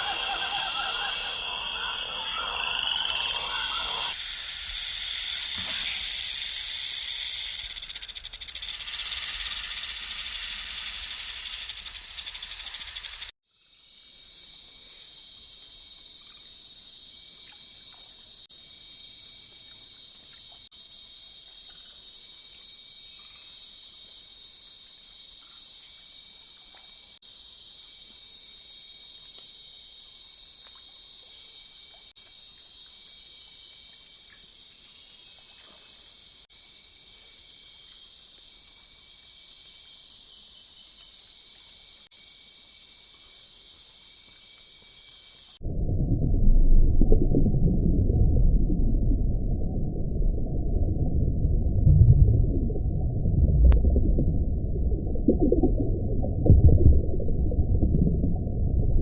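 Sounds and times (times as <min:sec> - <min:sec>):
shrill pulsing nature chorus: 0:00.0 - 0:13.4.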